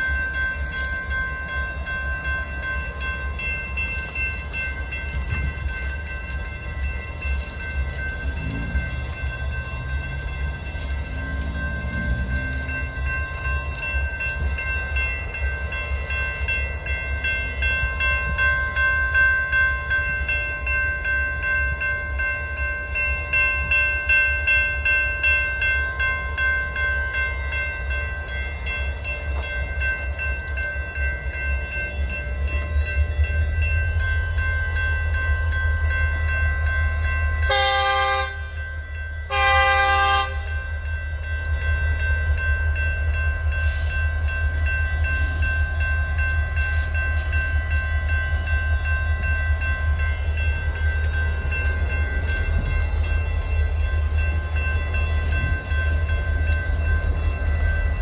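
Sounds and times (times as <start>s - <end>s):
train rumbling: 0.0s - 58.0s
locomotive horn blasts: 37.5s - 38.6s, 39.3s - 40.6s.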